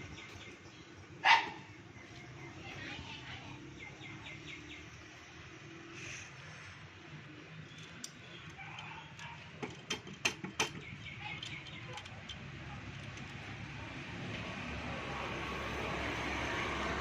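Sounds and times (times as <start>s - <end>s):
sharp metal clicks and taps: 7.8s - 13.4s.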